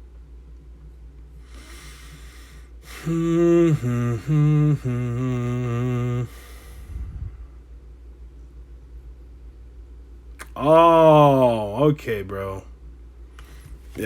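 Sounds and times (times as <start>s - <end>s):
man humming: 2.8s - 7.3s, 10.4s - 11.7s.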